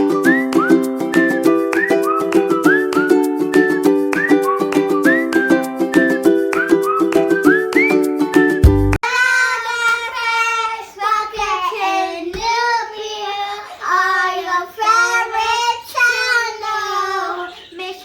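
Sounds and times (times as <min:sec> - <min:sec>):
instrumental jingle with whistling: 0:00.0 - 0:08.9
child singing: 0:09.0 - 0:18.0.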